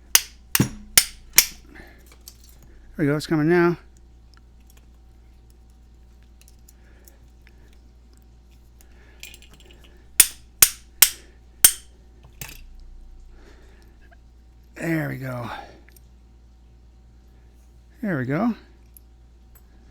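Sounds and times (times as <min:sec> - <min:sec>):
hammer tapping metal padlock: 0:00.0 - 0:01.7, 0:10.2 - 0:11.9.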